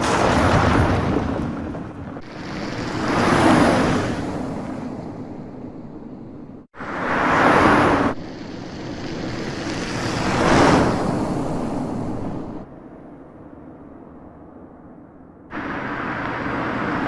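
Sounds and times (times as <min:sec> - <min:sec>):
loud rushing burst of car: 0:00.0 - 0:05.3, 0:06.8 - 0:12.7
car passing by: 0:00.0 - 0:17.0.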